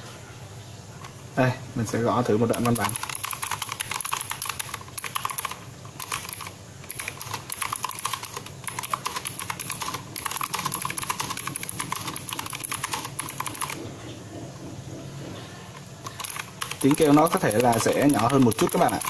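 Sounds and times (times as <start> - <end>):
mechanical keyboard typing: 2.4 - 13.9, 15.7 - 19.0.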